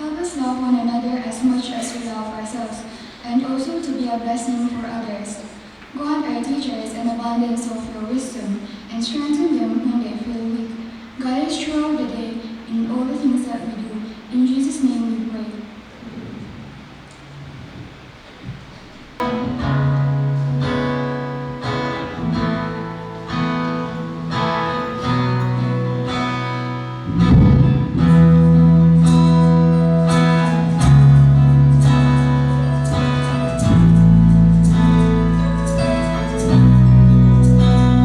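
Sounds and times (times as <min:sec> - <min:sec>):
deep bass notes: 0:19.2 - 0:38.0
plucked string notes: 0:19.2 - 0:38.0.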